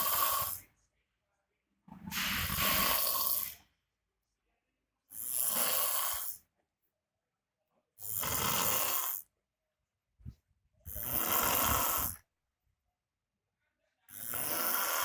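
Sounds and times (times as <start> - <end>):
man snoring loudly: 0.0 - 0.6, 2.4 - 3.5, 5.2 - 6.4, 8.0 - 9.2, 10.9 - 12.2, 14.1 - 15.0.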